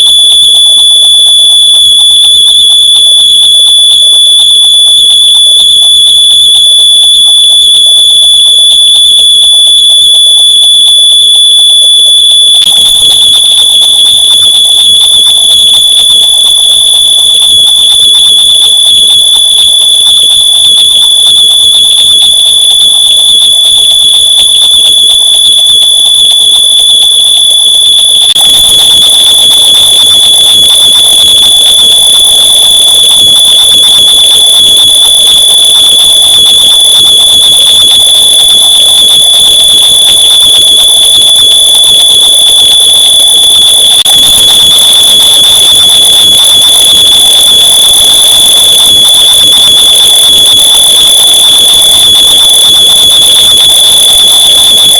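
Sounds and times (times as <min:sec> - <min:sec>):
high-pitched smoke alarm tone: 0:00.0 - 0:54.9.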